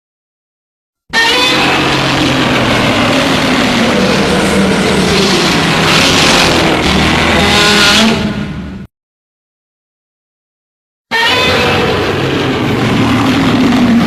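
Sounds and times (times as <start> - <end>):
monster roar: 1.5 - 8.3.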